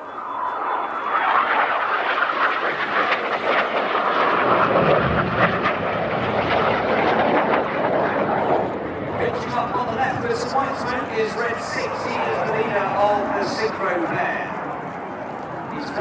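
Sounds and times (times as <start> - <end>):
jets flying past: 0.0 - 16.0.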